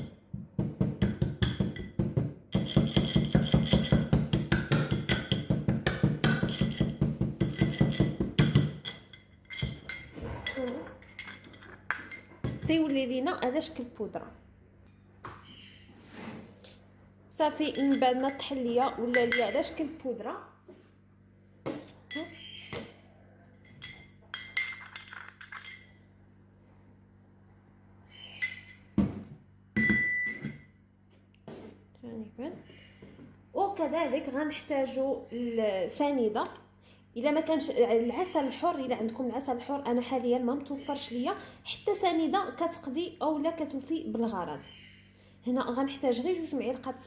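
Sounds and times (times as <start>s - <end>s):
pestle pounding in mortar: 0.0s - 8.8s
utensils clinking against glassware: 1.5s - 5.6s, 6.2s - 13.2s, 17.6s - 19.8s, 22.0s - 22.9s, 23.6s - 26.0s, 28.2s - 29.0s, 29.8s - 30.7s.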